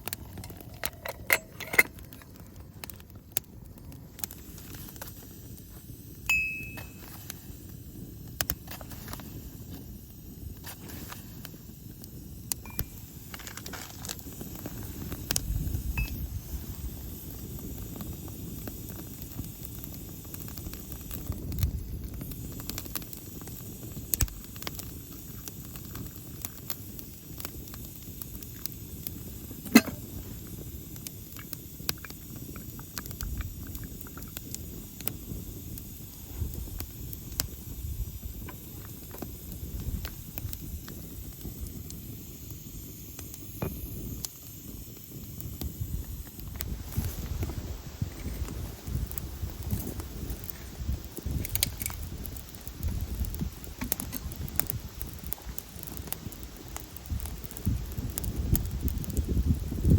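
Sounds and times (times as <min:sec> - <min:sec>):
campfire crackling: 0:00.0 - 0:59.9
faint hiss: 0:00.0 - 0:59.9
fire popping: 0:00.0 - 0:59.9.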